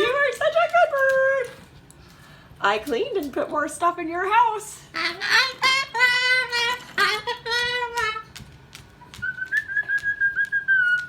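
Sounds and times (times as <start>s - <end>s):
cockatoo vocalising: 4.9s - 8.4s.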